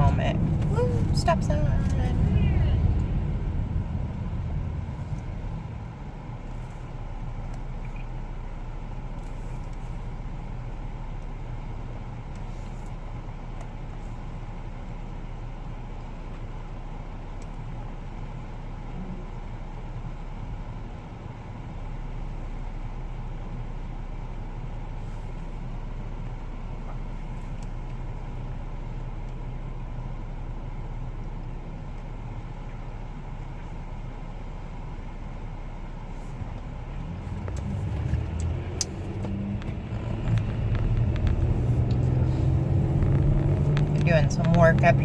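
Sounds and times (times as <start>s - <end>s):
car interior road rumble: 0.0s - 45.0s.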